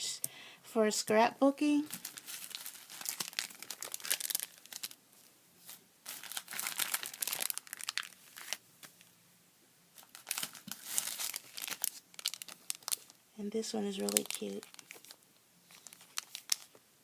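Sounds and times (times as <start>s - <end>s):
plastic packaging crinkling: 1.8s - 5.0s, 5.6s - 9.0s, 10.0s - 16.8s.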